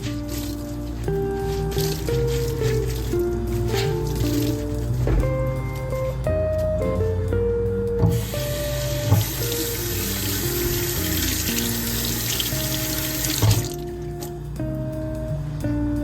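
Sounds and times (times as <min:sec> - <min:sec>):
background music: 0:00.0 - 0:16.0
water running from tap into sink: 0:08.0 - 0:14.0.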